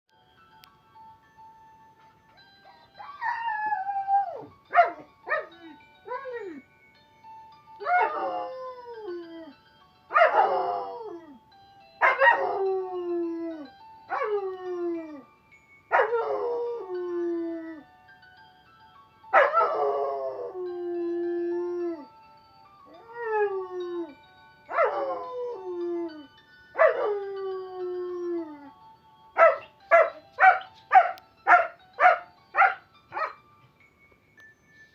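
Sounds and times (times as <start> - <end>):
dog howling: 16.0 - 17.2.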